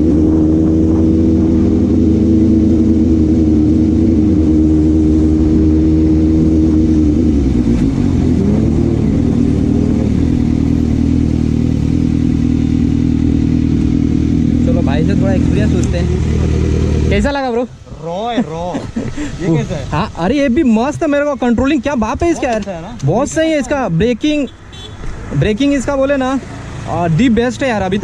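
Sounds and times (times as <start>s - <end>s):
motorcycle engine running: 0.0s - 17.6s.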